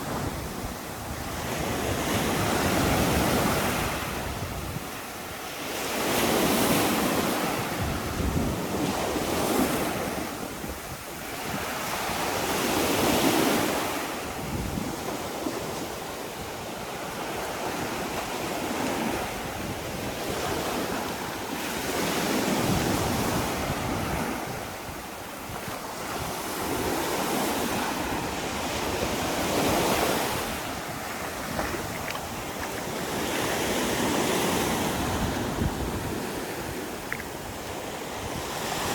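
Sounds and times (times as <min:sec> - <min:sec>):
waves breaking on beach: 0:00.0 - 0:38.9
wind buffeting microphone: 0:06.4 - 0:15.8, 0:22.4 - 0:38.9.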